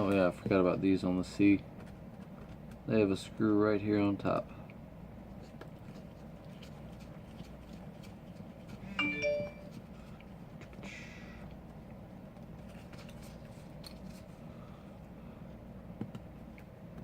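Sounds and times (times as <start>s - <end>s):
low steady hum: 0.0s - 17.0s
electronic chime: 8.9s - 9.7s.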